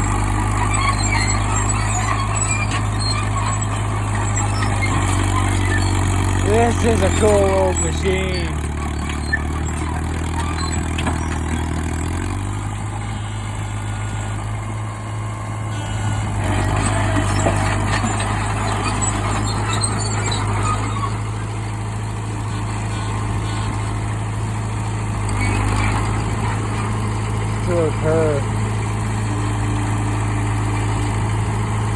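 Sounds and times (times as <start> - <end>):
bulldozer engine running: 0.0 - 31.9
scraping and clatter of concrete: 16.4 - 21.2.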